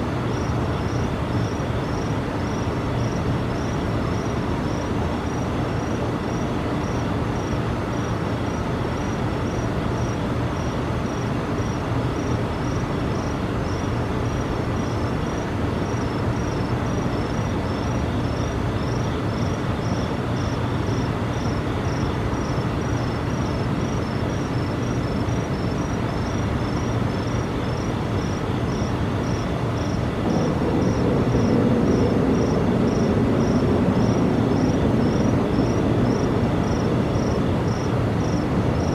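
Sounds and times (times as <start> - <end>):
insects chirping: 0.0 - 38.9
steady low drone: 30.1 - 36.7.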